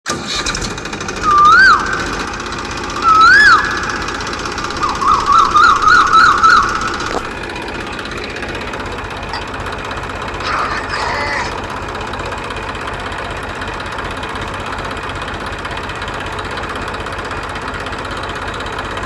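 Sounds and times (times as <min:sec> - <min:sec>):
steady mechanical running noise: 0:00.1 - 0:19.0
electronic siren-like whoops: 0:01.2 - 0:02.4, 0:03.0 - 0:07.3.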